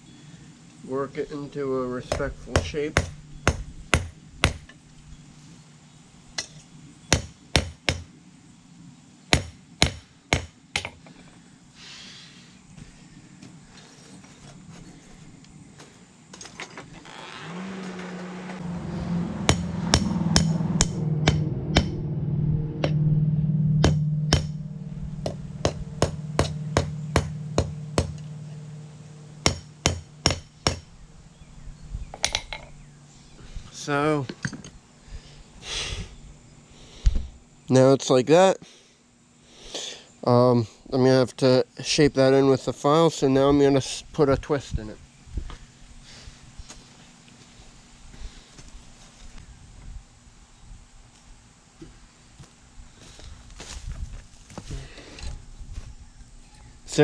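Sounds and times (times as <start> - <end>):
steady low hum: 0.0 - 57.0
hammer striking steel on anvil: 2.0 - 4.7, 19.4 - 22.0, 23.8 - 30.9.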